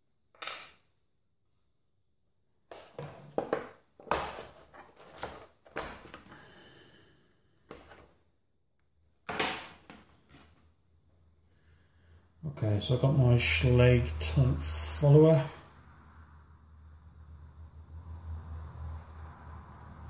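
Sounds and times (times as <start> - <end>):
tools knocking and scraping: 2.7 - 6.3, 7.7 - 8.2.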